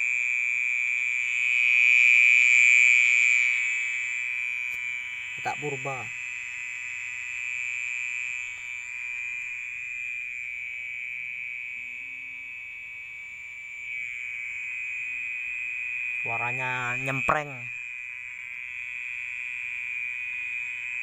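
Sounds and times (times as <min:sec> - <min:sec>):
frog trilling: 0:01.7 - 0:06.3, 0:07.6 - 0:15.4, 0:16.2 - 0:17.9.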